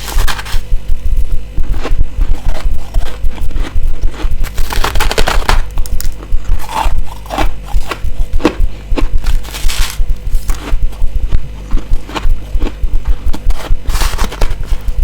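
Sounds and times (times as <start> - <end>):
ice crunching: 9.2 - 10.6, 13.9 - 14.6
low thumping of chewing: 10.0 - 15.0.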